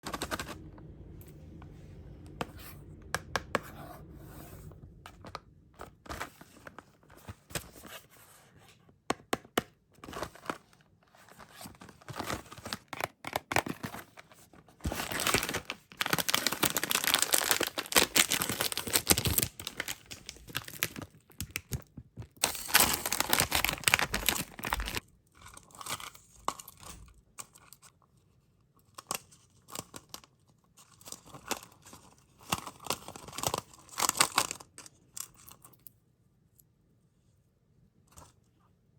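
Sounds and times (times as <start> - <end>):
plastic packaging crinkling: 14.8 - 25.0.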